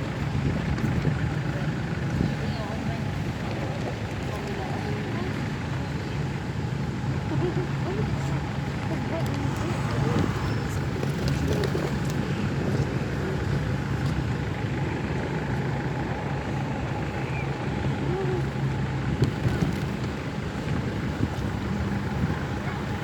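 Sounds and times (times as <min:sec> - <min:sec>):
indistinct voices: 0:00.0 - 0:23.0
passing vehicles hum: 0:00.0 - 0:23.0.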